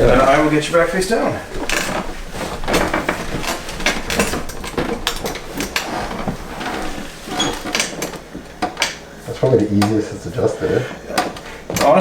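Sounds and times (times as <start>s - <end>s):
rustling on padded table: 0.0s - 12.0s
table knocks and creaks: 1.5s - 9.0s.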